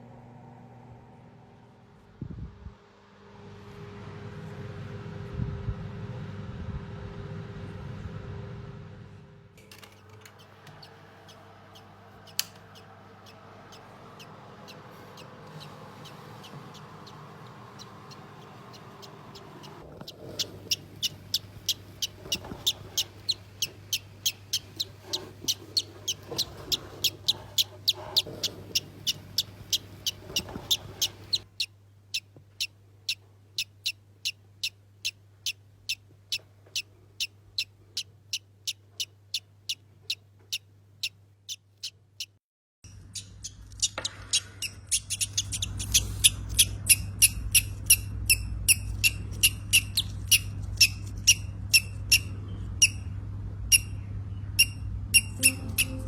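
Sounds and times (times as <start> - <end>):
parrot chick peeping: 9.8 - 56.0.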